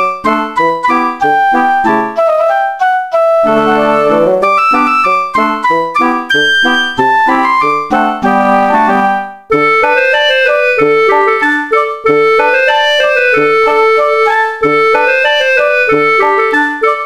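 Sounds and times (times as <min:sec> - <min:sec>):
bright keyboard melody: 0:00.0 - 0:17.0
recurring low note: 0:03.4 - 0:05.0.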